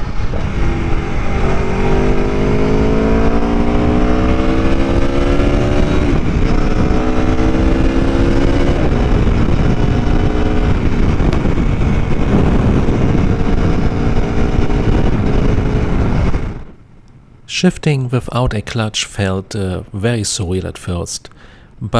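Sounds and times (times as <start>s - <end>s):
motorcycle engine accelerating: 0.0s - 16.8s
wind and road rush: 0.0s - 21.9s.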